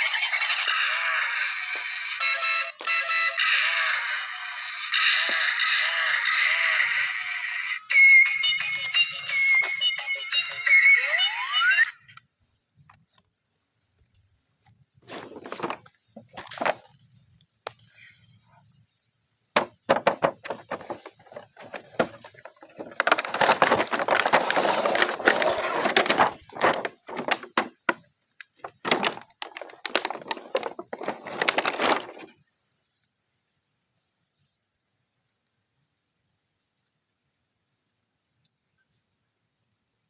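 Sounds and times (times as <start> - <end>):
toy packaging crinkling: 8.3 - 9.9, 15.0 - 16.9, 19.6 - 28.0, 28.6 - 32.3.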